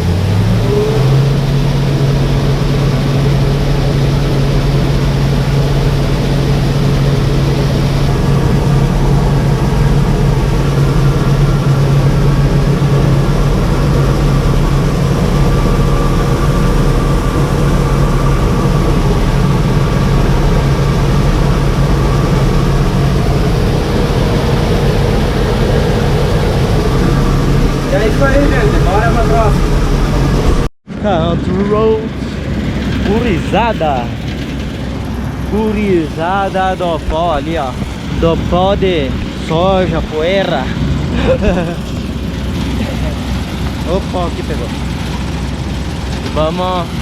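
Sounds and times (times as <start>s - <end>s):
combine harvester engine droning: 0.0s - 47.0s
unloading auger running: 31.9s - 47.0s.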